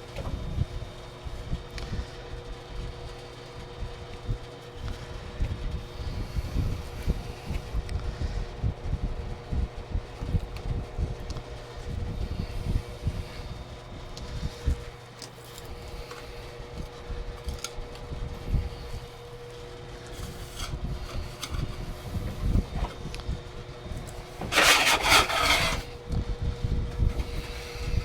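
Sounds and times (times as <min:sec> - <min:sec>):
harsh metal scraping rub: 0:11.8 - 0:23.2, 0:23.8 - 0:26.0.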